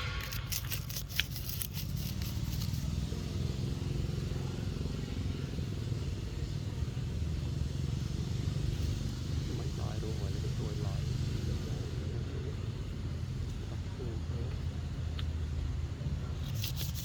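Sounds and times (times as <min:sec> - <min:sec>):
clicks and crackles: 0:00.0 - 0:02.9
motor running: 0:00.0 - 0:12.1.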